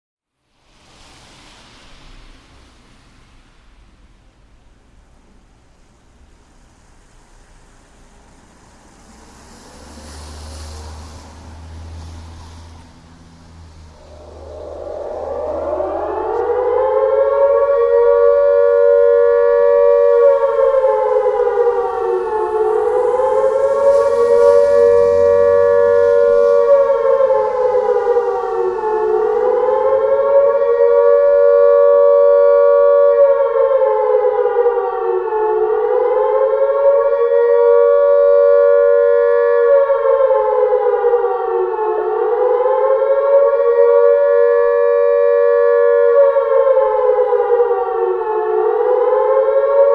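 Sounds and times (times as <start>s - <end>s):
wailing mechanical siren tone: 13.5s - 49.9s.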